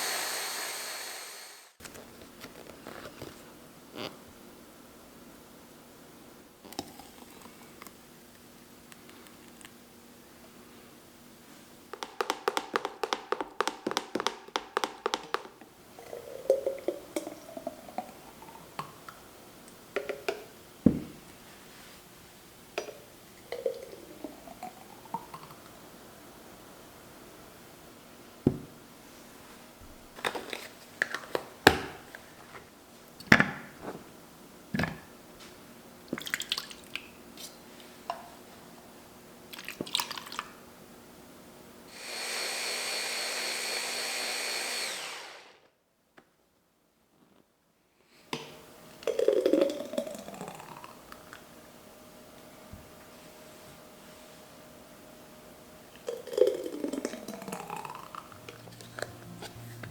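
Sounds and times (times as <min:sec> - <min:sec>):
hand blender pulsing: 0:00.0 - 0:01.8, 0:12.0 - 0:15.6, 0:41.9 - 0:45.7.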